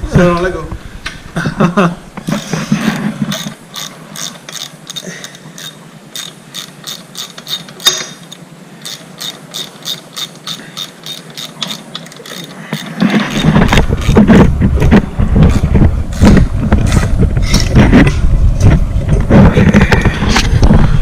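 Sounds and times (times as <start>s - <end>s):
ratchet wrench clicking: 3.3s - 14.2s.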